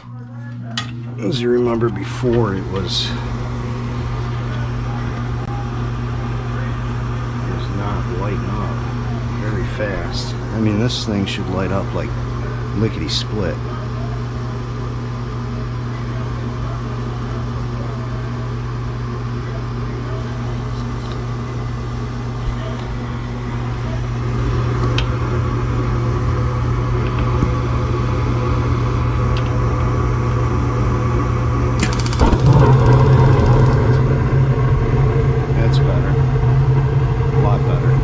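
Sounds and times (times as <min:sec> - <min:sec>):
gas burners lighting with a rush: 0:00.0 - 0:13.6, 0:19.3 - 0:30.6, 0:31.6 - 0:38.0
furnace draft inducer humming: 0:00.0 - 0:38.0
spark igniter clicking rapidly: 0:31.8 - 0:34.4.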